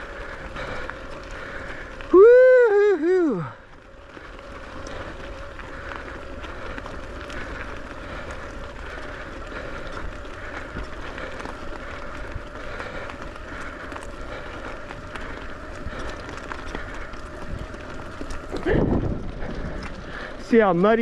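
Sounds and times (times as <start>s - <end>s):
tyres and wind rumble: 0.0s - 21.0s.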